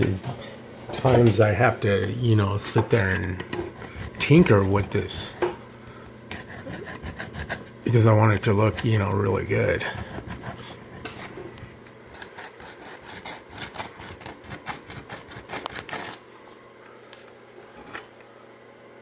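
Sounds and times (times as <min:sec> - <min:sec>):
scraping and tapping filler: 0:02.6 - 0:05.6, 0:10.1 - 0:12.4.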